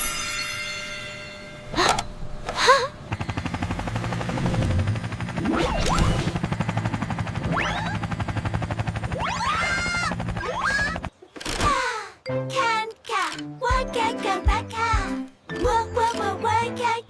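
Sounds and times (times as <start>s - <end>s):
fast mechanical rattle: 3.0s - 11.6s.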